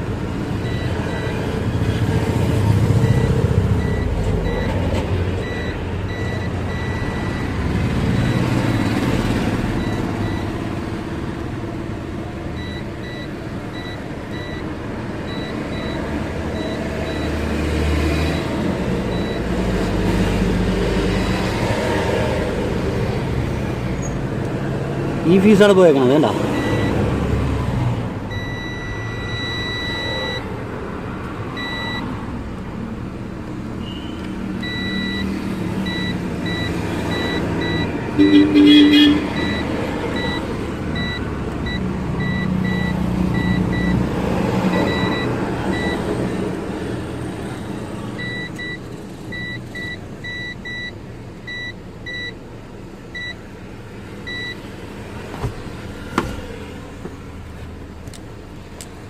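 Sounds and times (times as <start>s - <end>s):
vehicle noise hum: 0.0s - 59.0s
multimeter continuity buzzer beeping: 35.9s - 39.6s.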